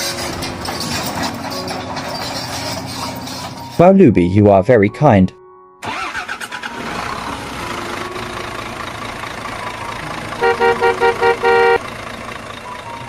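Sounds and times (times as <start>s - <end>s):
vehicle horn beeping: 10.4s - 11.8s.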